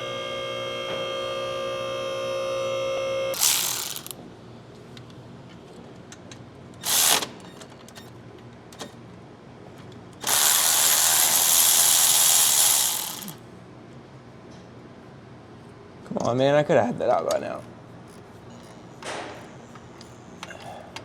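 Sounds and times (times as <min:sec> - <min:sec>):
cordless power tool spinning: 0:03.4 - 0:04.1, 0:06.8 - 0:07.3, 0:10.2 - 0:13.4.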